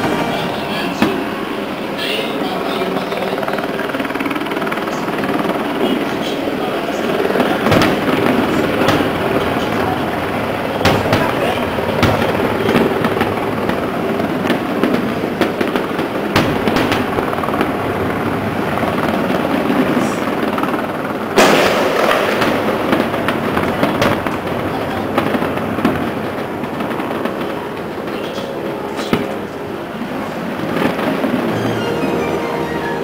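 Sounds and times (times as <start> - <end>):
fireworks bangs and crackles: 0.0 - 31.8.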